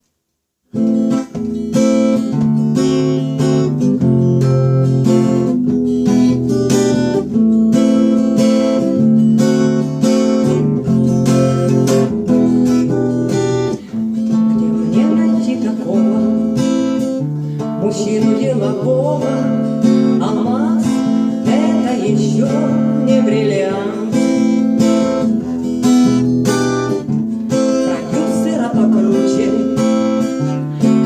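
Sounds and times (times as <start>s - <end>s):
acoustic guitar strumming chords: 0.7s - 31.0s.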